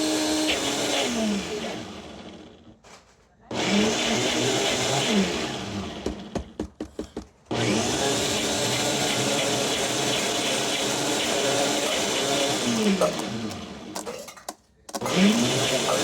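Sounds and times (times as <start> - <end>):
blender running: 0.0 - 2.7, 3.5 - 6.5, 7.5 - 14.1, 15.0 - 16.0.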